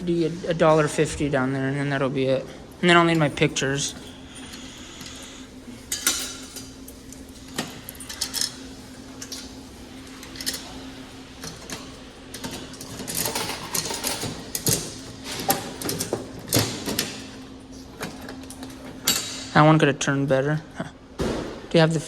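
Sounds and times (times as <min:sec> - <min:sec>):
steady low hum: 0:00.0 - 0:22.0
vending machine cranks clicking: 0:03.0 - 0:19.5
coins dropping into machine: 0:12.4 - 0:17.2.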